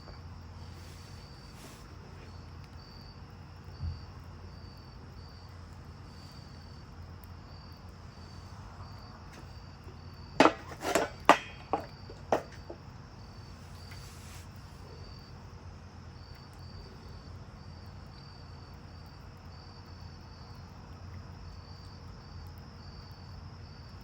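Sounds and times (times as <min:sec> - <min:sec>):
insects chirping: 0:00.0 - 0:24.0
small thump: 0:03.8 - 0:04.1, 0:10.4 - 0:12.8
hard objects knocking: 0:10.4 - 0:12.8.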